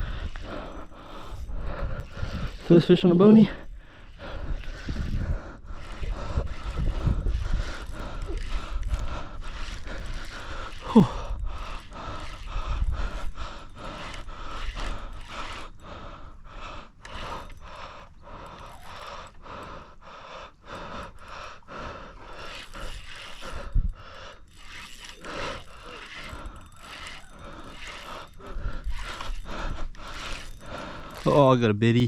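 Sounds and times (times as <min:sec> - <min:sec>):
person panting: 0:00.0 - 0:31.4
fishing reel handling: 0:04.0 - 0:15.8, 0:17.0 - 0:19.4, 0:22.4 - 0:31.4.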